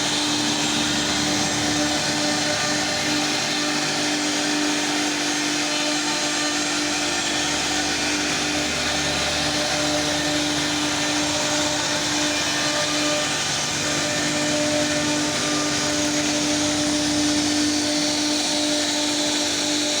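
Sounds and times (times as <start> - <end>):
router cutting wood: 0.0 - 20.0.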